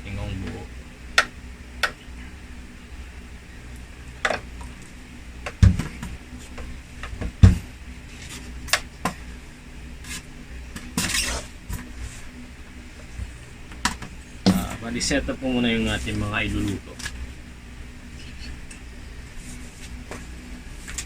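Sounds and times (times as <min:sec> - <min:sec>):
heavy thumps: 0:05.5 - 0:07.7.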